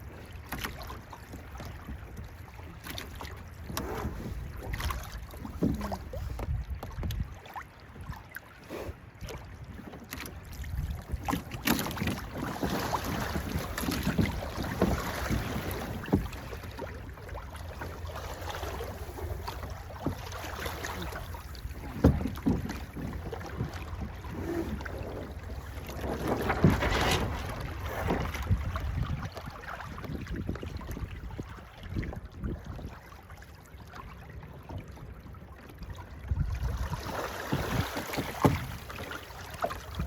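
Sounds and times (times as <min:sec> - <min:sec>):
water sloshing against hull: 0:00.0 - 0:40.0
wind buffeting microphone: 0:03.5 - 0:08.3, 0:09.2 - 0:17.3, 0:21.0 - 0:33.0, 0:36.1 - 0:39.0.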